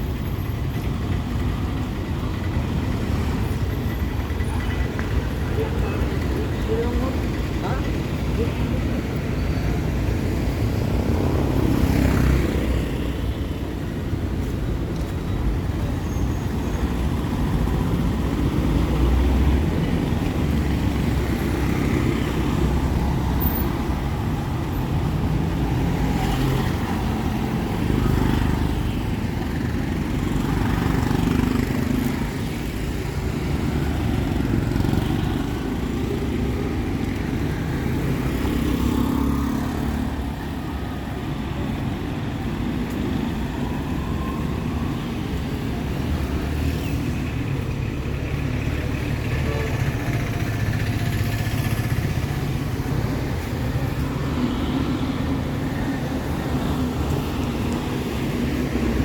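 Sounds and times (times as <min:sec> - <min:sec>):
vehicles passing: 0:00.0 - 0:59.0.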